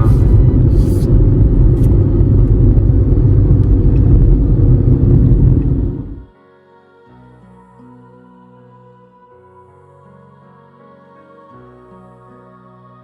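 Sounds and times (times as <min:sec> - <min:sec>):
vehicle rumbling: 0:00.0 - 0:06.3.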